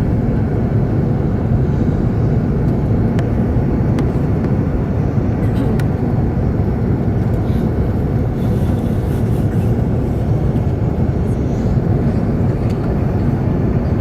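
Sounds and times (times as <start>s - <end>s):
airplane cabin roar: 0.0s - 14.0s.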